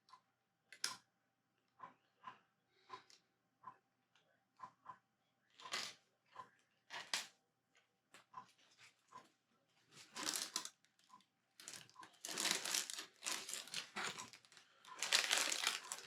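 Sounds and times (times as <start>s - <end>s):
plastic bag crinkling: 10.0s - 16.0s
lego bricks rattling: 10.1s - 10.8s, 11.6s - 16.0s
lego bricks clicking: 10.2s - 10.8s, 11.6s - 16.0s.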